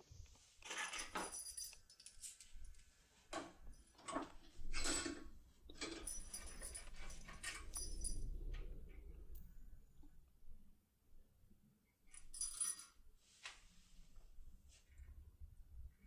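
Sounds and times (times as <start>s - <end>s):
metallic clicks and jingles of lock tool: 3.9s - 8.7s.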